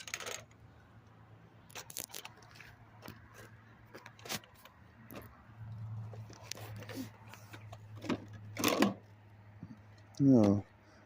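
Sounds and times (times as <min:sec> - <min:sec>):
junk clicking and rustling: 0:00.0 - 0:00.6, 0:01.7 - 0:10.6.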